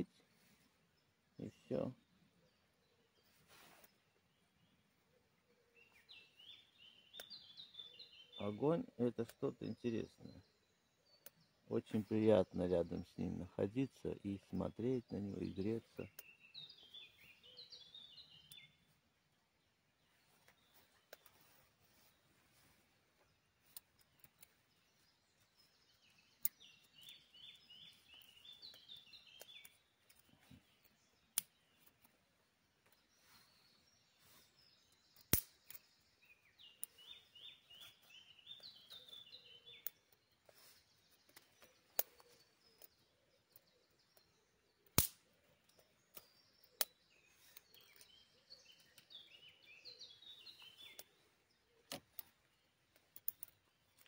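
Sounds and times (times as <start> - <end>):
songbird trilling: 5.5 - 18.9, 23.7 - 29.9, 33.0 - 44.9, 45.6 - 52.6.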